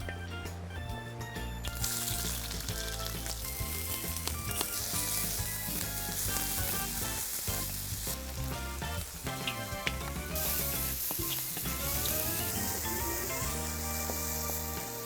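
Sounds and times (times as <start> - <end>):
background music: 0.0 - 15.0
food sizzling in hot oil: 1.6 - 15.0.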